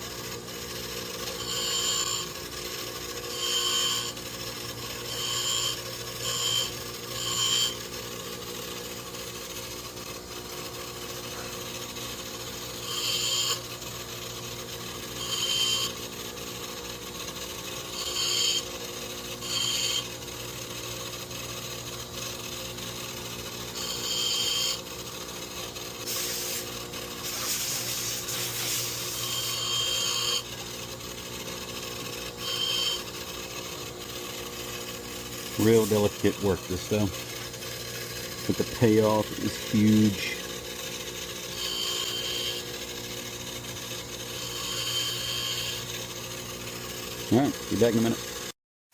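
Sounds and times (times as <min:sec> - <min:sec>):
power grinder grinding metal: 0:01.3 - 0:02.3, 0:03.3 - 0:04.2, 0:05.1 - 0:07.8, 0:12.8 - 0:13.6, 0:15.2 - 0:15.9, 0:17.9 - 0:18.7, 0:19.4 - 0:20.1, 0:23.8 - 0:24.8, 0:26.1 - 0:30.5, 0:32.4 - 0:33.1, 0:35.5 - 0:37.4, 0:38.5 - 0:40.4, 0:41.5 - 0:42.7, 0:44.3 - 0:45.9.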